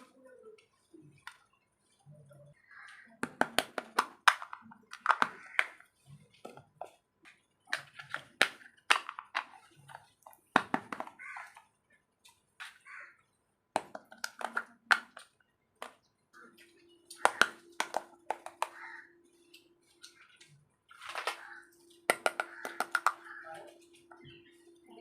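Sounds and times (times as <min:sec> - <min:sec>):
toy pieces clicking and tapping: 0:03.2 - 0:05.9, 0:07.7 - 0:11.4, 0:13.8 - 0:16.0, 0:17.1 - 0:18.9, 0:21.1 - 0:23.5.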